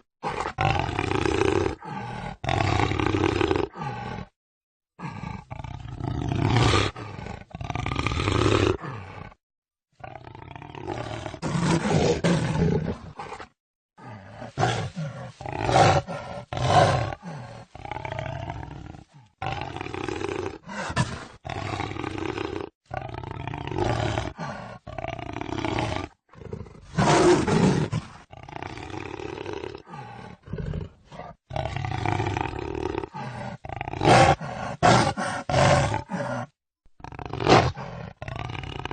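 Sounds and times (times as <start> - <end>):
jaguar roaring: 5.0 - 9.4, 10.0 - 38.9.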